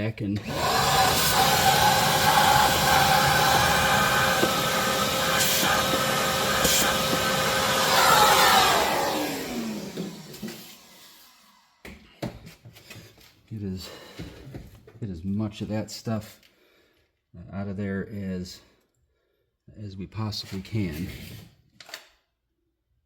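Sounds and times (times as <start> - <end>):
vacuum motor spinning down: 0.4 - 11.8
vacuum cleaner running: 0.4 - 12.0.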